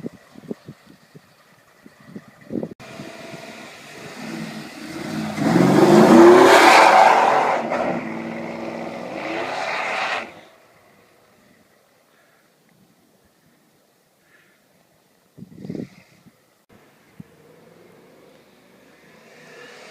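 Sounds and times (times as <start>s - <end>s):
pickup engine revving: 2.8s - 10.5s.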